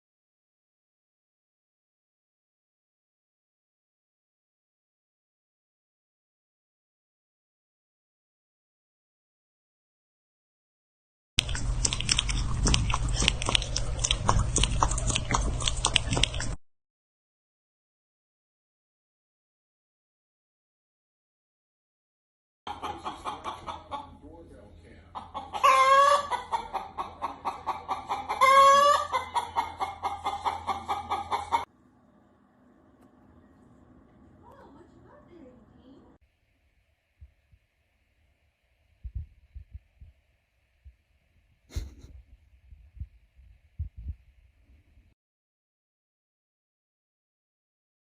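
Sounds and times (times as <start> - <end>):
low steady hum: 11.4 - 16.6, 31.7 - 45.2
pet chewing and crunching: 11.4 - 16.6
chicken clucking: 22.7 - 24.4, 25.0 - 31.7.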